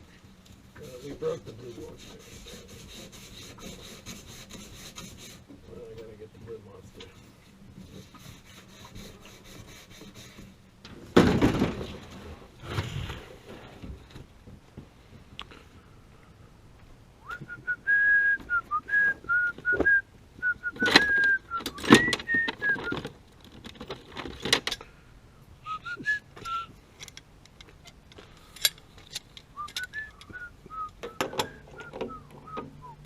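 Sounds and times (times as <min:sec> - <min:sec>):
person whistling a tune: 0:17.2 - 0:23.0, 0:25.6 - 0:26.7, 0:29.6 - 0:33.0.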